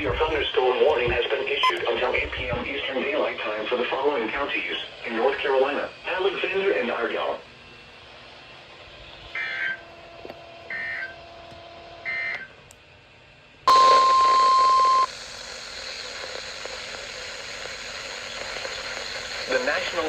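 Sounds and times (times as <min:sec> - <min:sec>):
broadcast static hiss: 0:00.0 - 0:07.2, 0:13.7 - 0:20.0.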